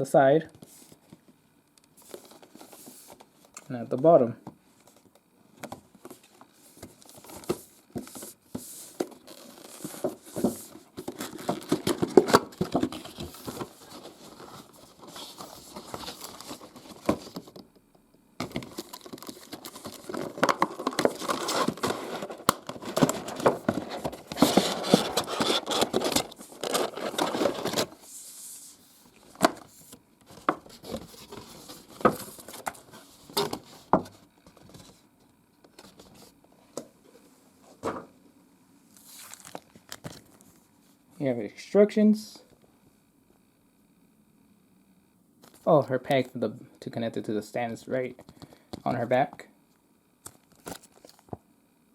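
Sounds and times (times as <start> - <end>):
packaging crinkling and tearing: 9.0 - 17.6, 18.4 - 28.0, 39.0 - 40.4.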